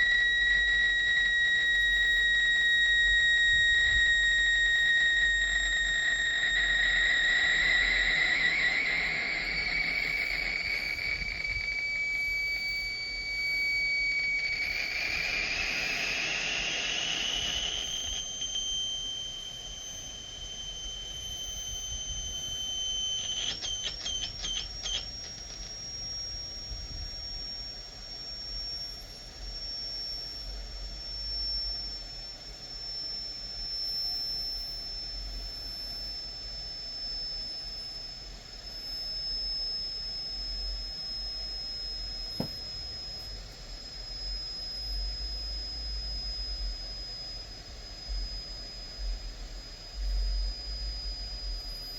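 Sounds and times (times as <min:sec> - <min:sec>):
high electronic whistling: 0:00.0 - 0:48.9
electronic chirps: 0:06.3 - 0:25.7.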